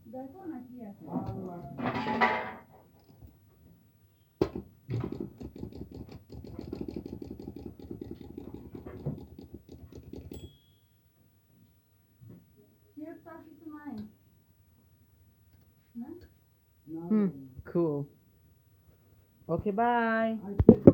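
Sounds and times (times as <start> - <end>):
typewriter margin bell ring: 10.3 - 10.9.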